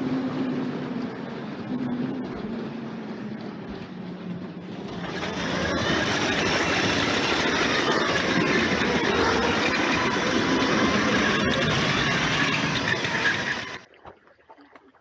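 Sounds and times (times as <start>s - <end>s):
toy train whirring and rattling: 5.0s - 13.8s.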